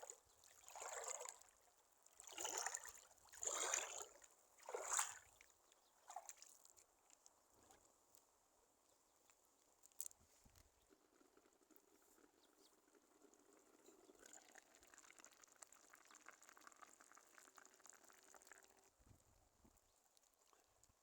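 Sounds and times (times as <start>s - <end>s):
stew bubbling and sizzling: 10.9s - 19.0s.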